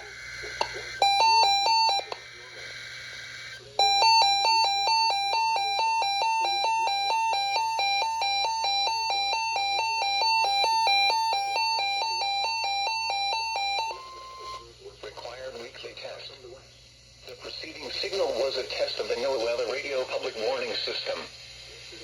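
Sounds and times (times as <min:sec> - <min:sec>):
radio alert alarm beeping: 0:00.5 - 0:02.1, 0:03.4 - 0:14.6.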